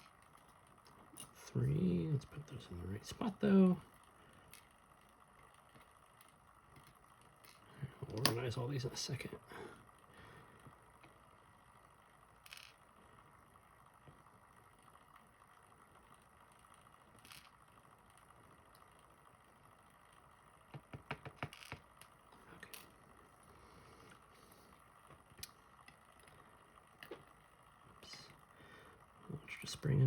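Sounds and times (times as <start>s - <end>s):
small metal parts clicking: 12.3s - 12.8s, 16.6s - 17.6s.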